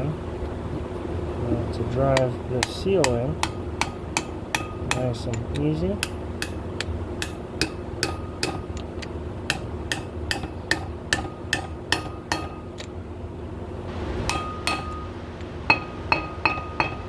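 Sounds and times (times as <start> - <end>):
hammer tapping metal: 2.1 - 12.9, 14.2 - 17.0.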